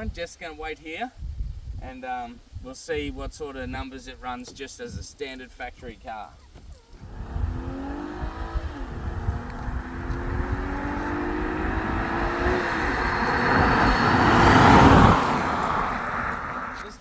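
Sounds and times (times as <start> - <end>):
tyre and wind noise: 0.0 - 17.0
car engine accelerating: 7.0 - 17.0.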